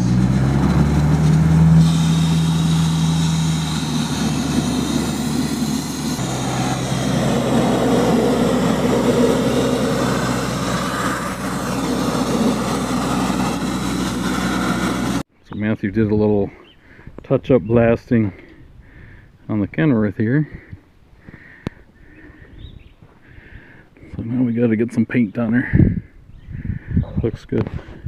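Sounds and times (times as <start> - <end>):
low engine hum: 0.0 - 15.3
sandblaster hissing: 0.8 - 15.2.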